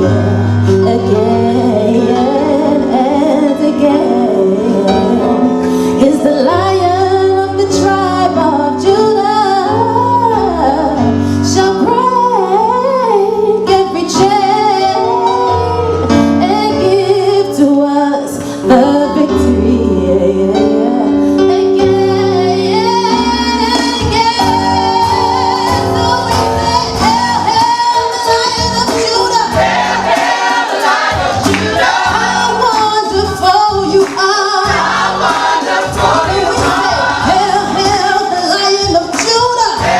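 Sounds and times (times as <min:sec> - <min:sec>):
woman singing gospel: 0:00.0 - 0:29.7, 0:31.4 - 0:35.0, 0:35.9 - 0:39.9
band with stepping bass: 0:23.9 - 0:39.9.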